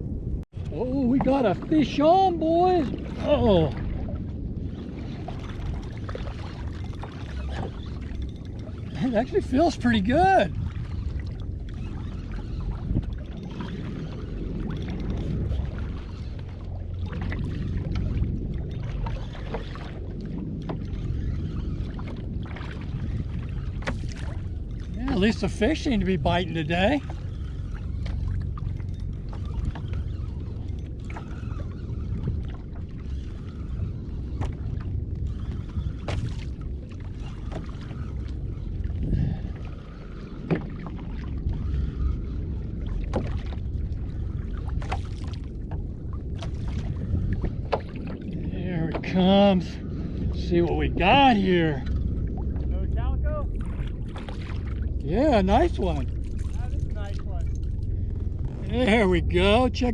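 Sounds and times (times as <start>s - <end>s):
water lapping against kayak hull: 0.0s - 59.9s
wind rumble on microphone: 0.0s - 59.9s
small splashes: 20.9s - 25.5s, 53.5s - 54.8s.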